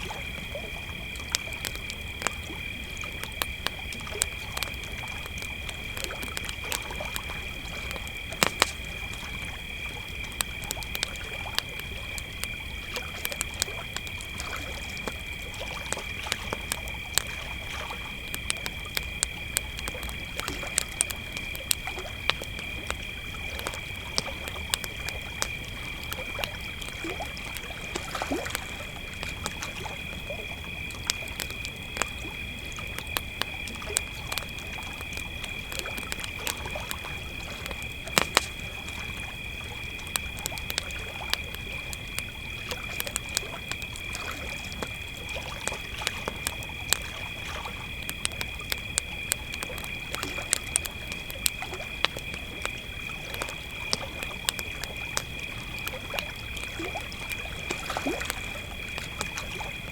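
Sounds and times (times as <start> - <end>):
campfire crackling and popping: 0.0 - 59.9
crickets chirring: 0.0 - 59.9.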